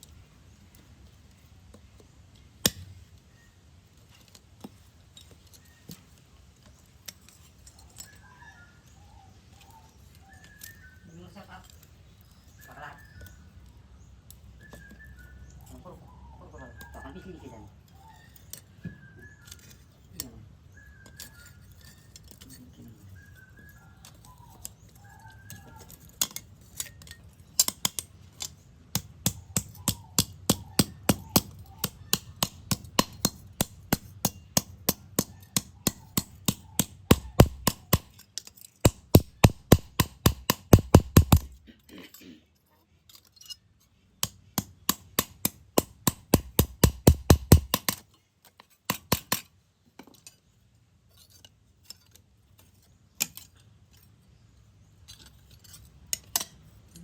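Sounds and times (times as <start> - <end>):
hammer striking metal: 29.0 - 38.2, 38.8 - 41.6, 44.2 - 48.0.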